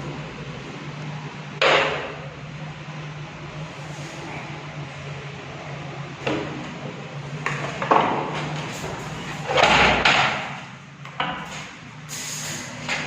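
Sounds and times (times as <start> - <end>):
sharp metal knocks: 1.6 - 2.2, 9.6 - 10.6.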